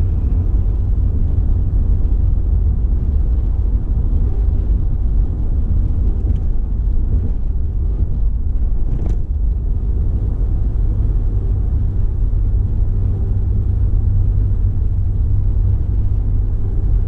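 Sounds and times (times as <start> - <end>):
car driving on road: 0.0 - 17.0.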